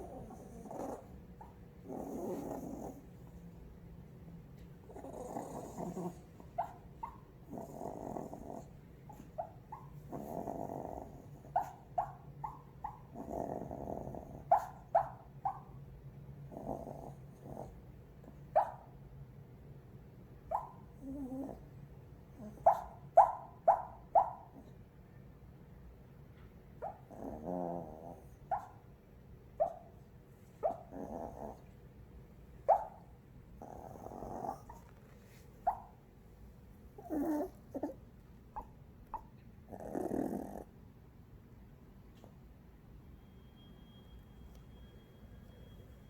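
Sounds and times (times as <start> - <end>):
dog snoring: 0.0 - 1.1, 1.8 - 3.4, 4.9 - 6.4, 7.5 - 8.7, 10.1 - 11.5, 13.2 - 14.6, 16.5 - 17.7, 27.1 - 28.4, 30.9 - 31.6, 33.6 - 34.8, 37.0 - 38.0, 39.7 - 40.7
dog whimpering: 37.0 - 38.0.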